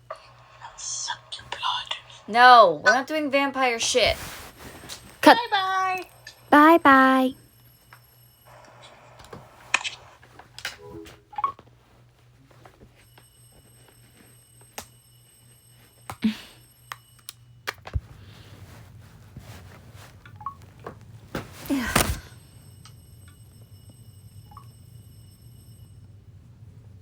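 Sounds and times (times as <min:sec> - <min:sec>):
thump and rustle: 0:20.8 - 0:22.4.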